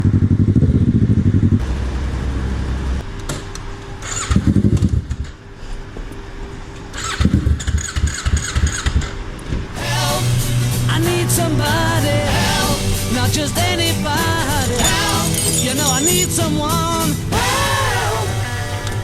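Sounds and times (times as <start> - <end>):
motorcycle engine cranking: 10.5 - 17.3.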